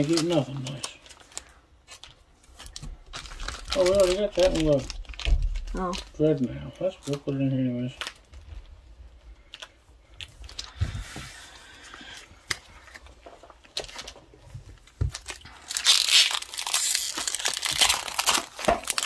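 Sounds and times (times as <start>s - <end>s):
foil wrapper crinkling and tearing: 0.0s - 8.7s, 14.9s - 19.0s.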